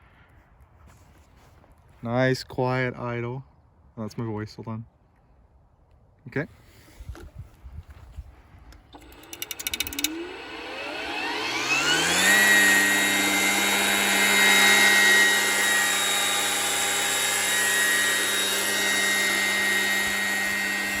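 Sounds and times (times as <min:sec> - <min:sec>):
string trimmer motor whine: 0:08.8 - 0:21.0.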